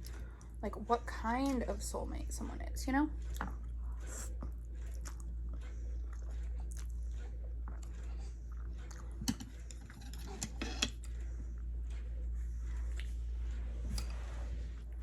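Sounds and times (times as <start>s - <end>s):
low hum: 0.0s - 15.0s
person chewing: 3.2s - 11.7s, 12.7s - 13.2s.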